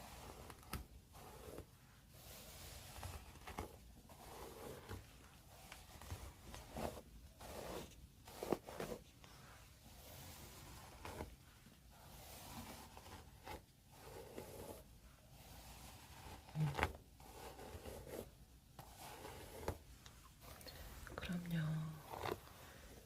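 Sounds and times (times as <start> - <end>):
hairbrush swishing through hair: 0.0 - 11.3.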